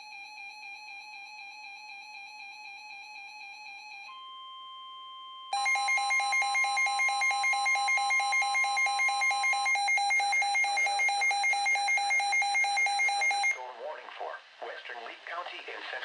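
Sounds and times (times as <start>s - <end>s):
steady alarm tone: 5.5s - 13.6s
rapid electronic alert beeping: 5.6s - 13.6s.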